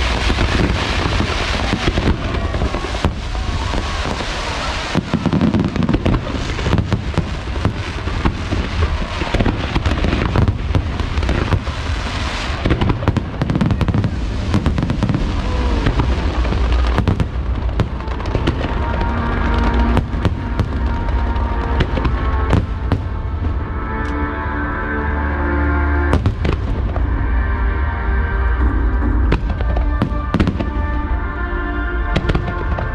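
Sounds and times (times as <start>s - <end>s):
fireworks banging and crackling: 0.0s - 23.6s, 26.1s - 27.3s, 28.6s - 31.2s, 32.0s - 32.9s
deep rumble: 0.0s - 32.9s
show music: 0.0s - 32.9s.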